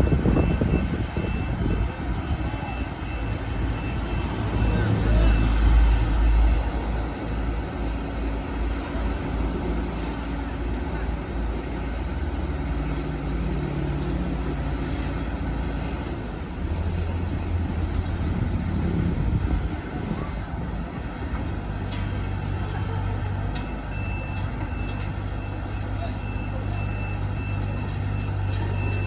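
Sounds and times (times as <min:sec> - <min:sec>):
reversing alarm beeping: 0:00.0 - 0:06.9, 0:23.5 - 0:29.0
combine harvester engine drone: 0:00.0 - 0:29.0.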